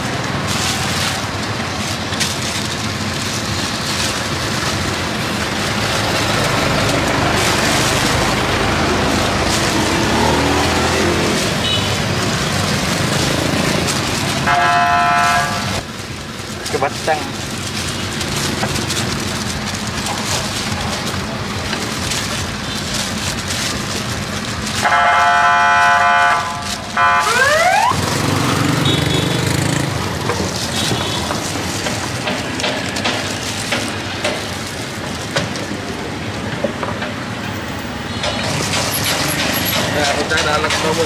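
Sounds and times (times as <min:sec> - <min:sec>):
street traffic: 0:00.0 - 0:41.0
vehicle horn blaring: 0:11.5 - 0:12.0, 0:14.4 - 0:15.8, 0:24.8 - 0:27.6.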